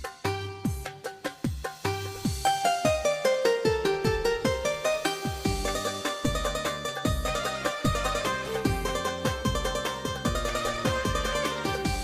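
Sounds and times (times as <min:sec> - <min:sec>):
plucked notes over bass music: 0:02.1 - 0:12.0.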